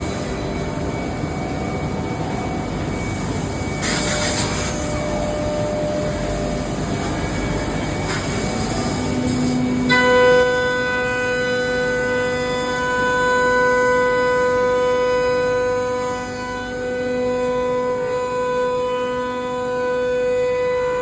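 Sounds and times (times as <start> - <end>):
high whine: 0.0 - 21.0
machine running mechanical noise: 0.0 - 21.0.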